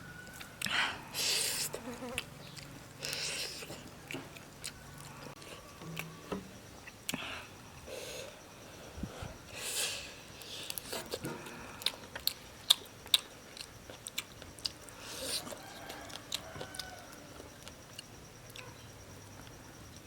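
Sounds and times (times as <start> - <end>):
person chewing and biting: 10.7 - 18.7.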